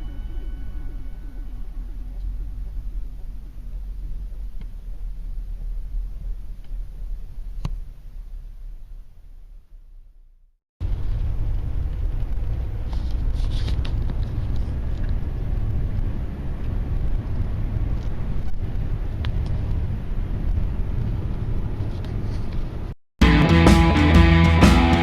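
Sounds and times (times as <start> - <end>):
low rumbling noise: 0.0 - 10.2, 10.8 - 25.0.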